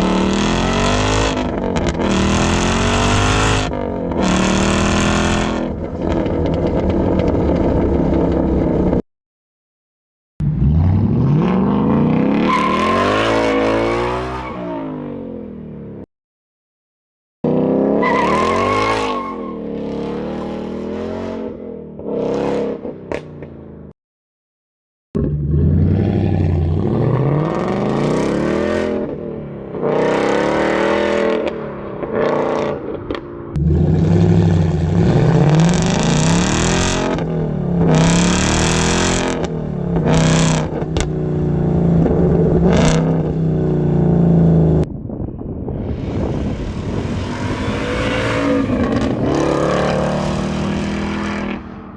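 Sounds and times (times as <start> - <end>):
car engine revving: 0.0 - 9.0, 10.4 - 14.6, 25.2 - 29.2, 29.8 - 44.9, 45.7 - 51.9.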